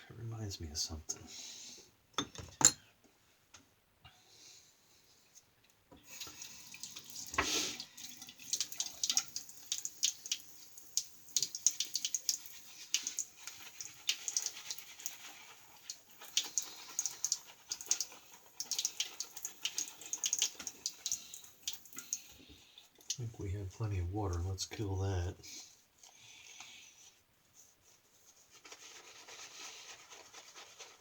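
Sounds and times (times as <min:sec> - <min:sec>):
shaving brush swishing lather: 0:12.3 - 0:20.2.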